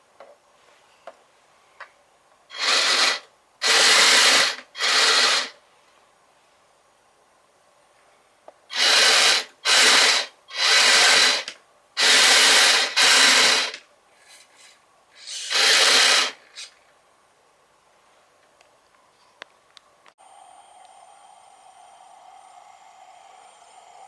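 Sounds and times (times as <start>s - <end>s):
toy vehicle tracks whirring: 2.5s - 5.6s, 8.7s - 16.8s.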